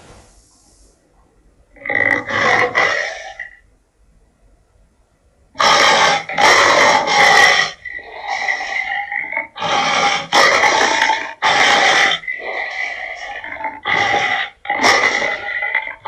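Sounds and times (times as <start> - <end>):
harsh animal calls: 1.8 - 3.7, 5.6 - 16.0.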